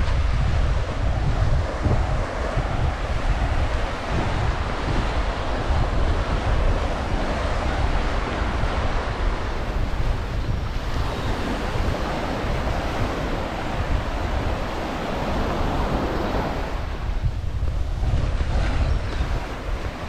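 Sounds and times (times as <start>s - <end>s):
ocean waves on sandy beach: 0.0s - 20.0s
wind buffeting microphone: 0.0s - 20.0s.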